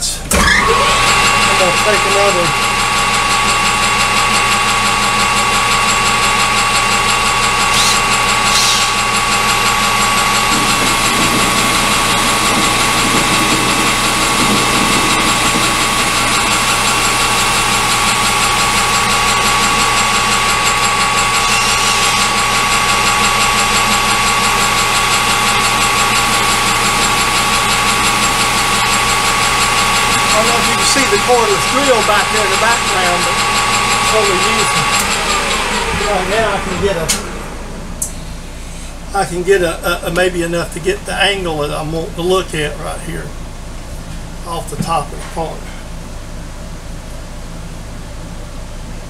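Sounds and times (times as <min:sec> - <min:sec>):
metal lathe whining: 0:00.3 - 0:39.2.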